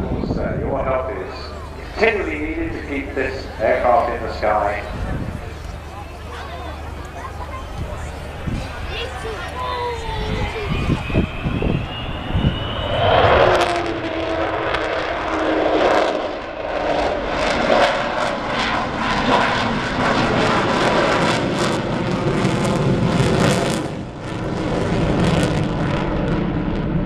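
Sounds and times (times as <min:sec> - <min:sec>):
jet engines howling and roaring: 0:00.0 - 0:27.0.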